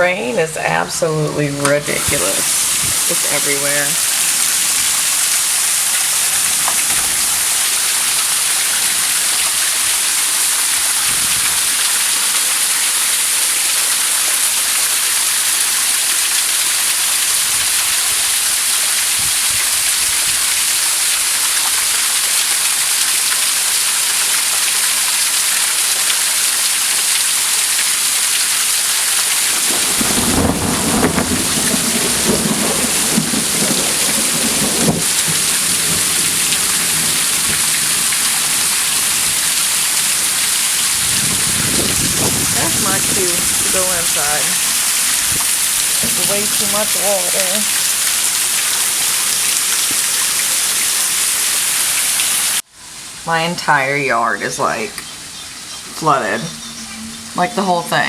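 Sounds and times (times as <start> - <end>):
thunder rumbling: 0.0 - 9.8, 29.4 - 49.3, 54.5 - 58.0
heavy rain hissing: 0.0 - 58.0.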